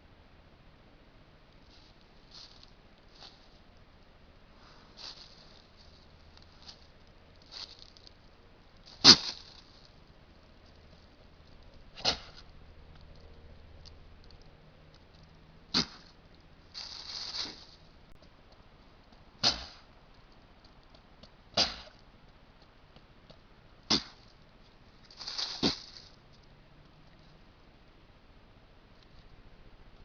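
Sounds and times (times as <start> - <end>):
deer sneezing: 9.0 - 9.3.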